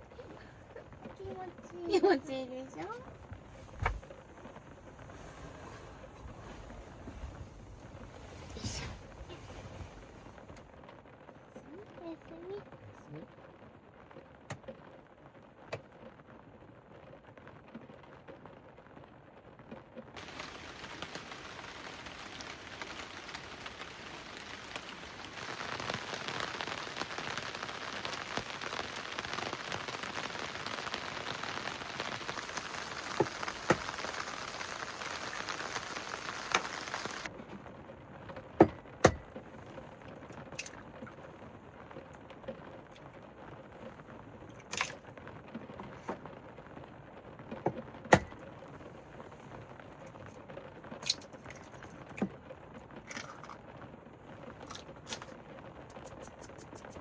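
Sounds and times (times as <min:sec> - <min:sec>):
rain falling: 0:00.0 - 0:57.0.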